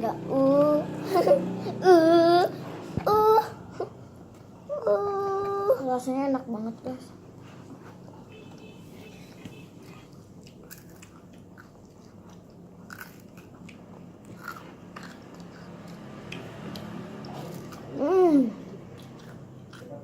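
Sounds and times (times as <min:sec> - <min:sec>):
biting and chewing crispy pancake: 0:09.9 - 0:17.9.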